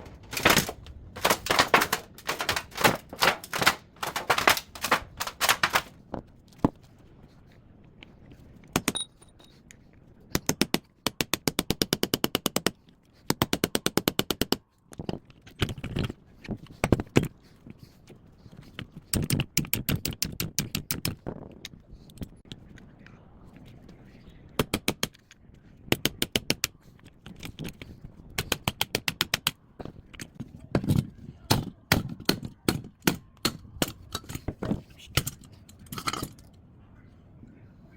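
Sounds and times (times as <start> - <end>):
metal and plastic knocks: 0.0 - 5.9.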